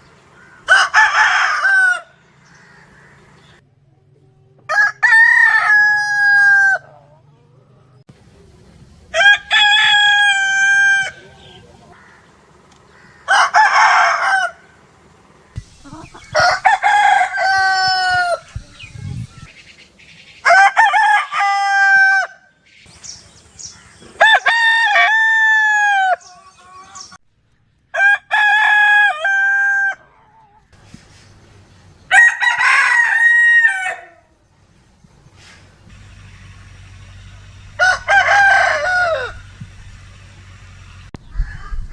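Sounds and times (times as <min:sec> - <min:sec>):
rooster crowing: 0:00.5 - 0:03.2, 0:04.7 - 0:07.0, 0:09.1 - 0:12.2, 0:12.9 - 0:14.8, 0:15.9 - 0:18.9, 0:20.4 - 0:22.5, 0:24.1 - 0:27.1, 0:27.9 - 0:30.2, 0:32.1 - 0:34.3, 0:37.7 - 0:39.6.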